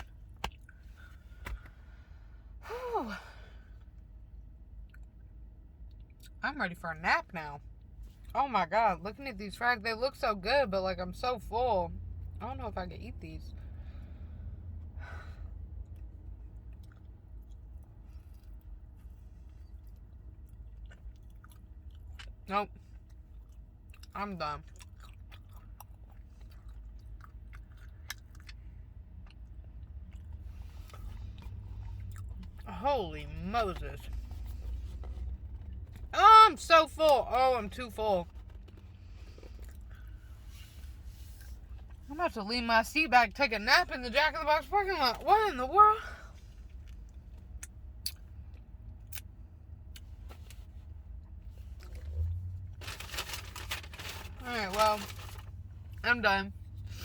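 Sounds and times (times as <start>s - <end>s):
low rumble inside a car: 0.0s - 57.0s
steady low hum: 0.0s - 57.0s
person chewing food: 15.8s - 32.7s, 34.0s - 36.1s, 38.3s - 40.4s, 46.7s - 52.5s.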